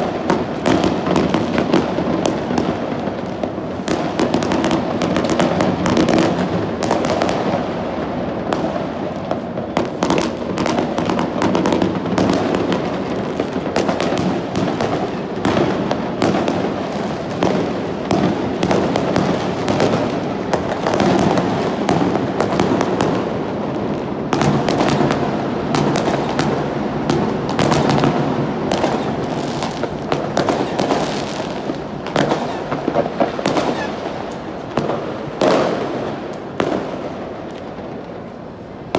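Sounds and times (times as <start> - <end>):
fireworks and firecrackers crackling: 0.0 - 38.9.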